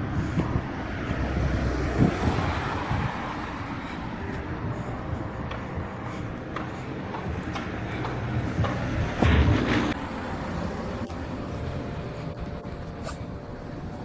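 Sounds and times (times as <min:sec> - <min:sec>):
street noise: 0:00.0 - 0:14.0
vehicle passing: 0:00.0 - 0:14.0.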